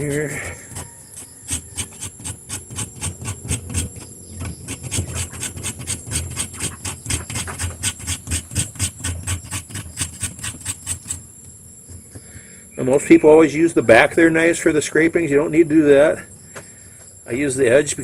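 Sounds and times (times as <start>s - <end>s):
knife scraping shavings off wood: 0.0s - 11.3s.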